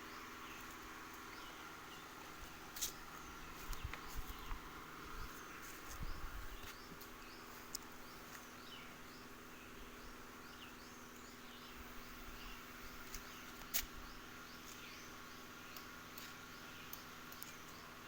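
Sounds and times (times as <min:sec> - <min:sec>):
small birds chirping: 0:00.0 - 0:18.0
faint clicks: 0:15.7 - 0:17.8.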